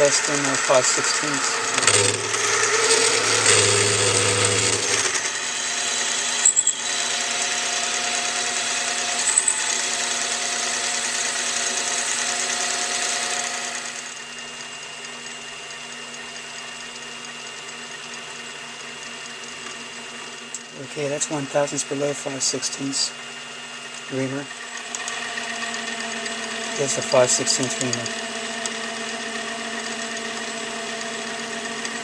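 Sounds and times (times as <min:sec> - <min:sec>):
machine drilling into steel: 0:00.0 - 0:14.4.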